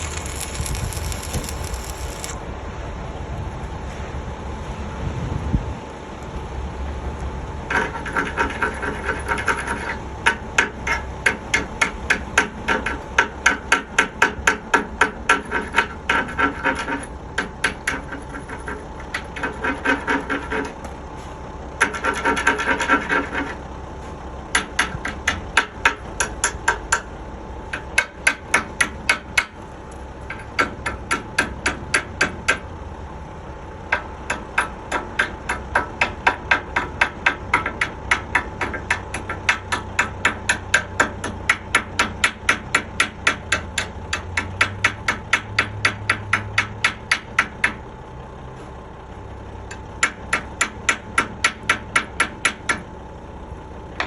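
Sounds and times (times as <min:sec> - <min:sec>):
scraping: 0:00.0 - 0:02.4.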